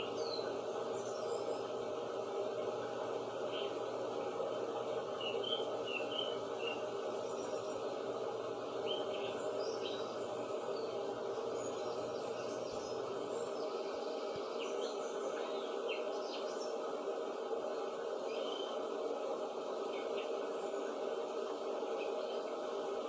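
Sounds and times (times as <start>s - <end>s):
birds chirping: 0.0s - 16.9s
steady background hiss: 0.0s - 23.0s.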